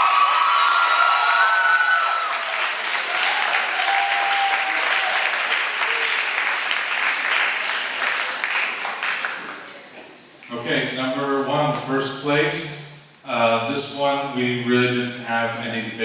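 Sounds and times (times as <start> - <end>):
shrill whoops and cheers: 0.0 - 6.4
audience applauding: 0.0 - 10.0.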